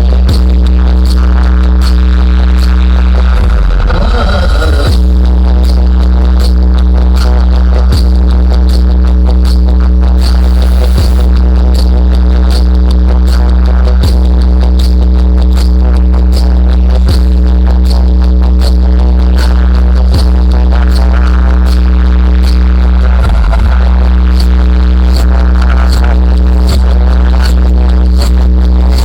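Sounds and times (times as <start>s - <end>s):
bass-heavy electronic music: 0.0s - 29.0s.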